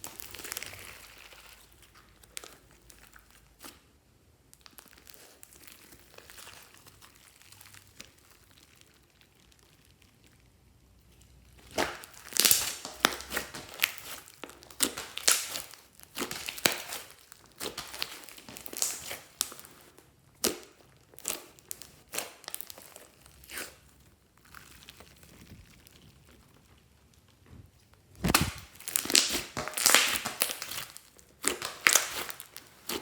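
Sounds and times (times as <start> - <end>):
slime squeezed with crackling pops: 11.5 - 19.7, 28.1 - 33.0.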